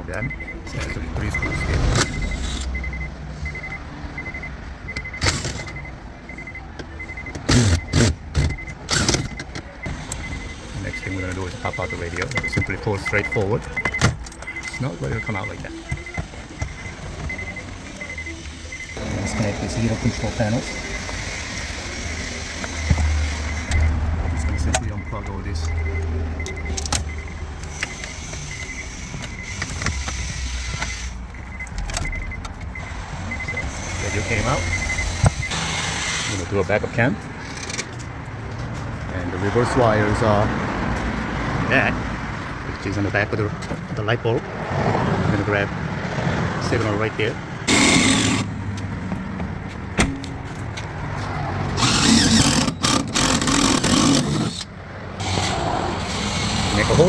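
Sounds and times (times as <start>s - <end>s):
car warning chime beeping: 0.0s - 37.2s.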